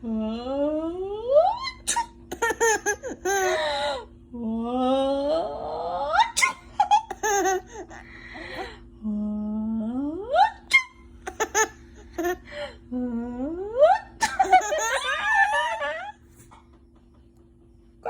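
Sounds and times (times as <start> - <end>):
baby giggling and laughing: 2.3 - 3.8, 7.0 - 8.5, 11.2 - 12.6, 14.2 - 15.8.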